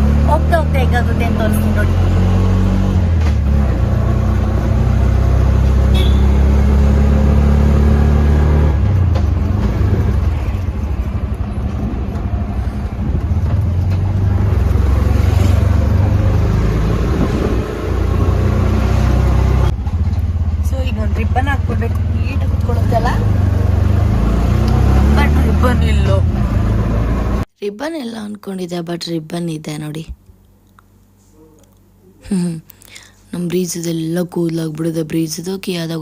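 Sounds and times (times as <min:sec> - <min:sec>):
auto-rickshaw engine running: 0:00.0 - 0:27.5
wind and road noise: 0:00.0 - 0:27.5.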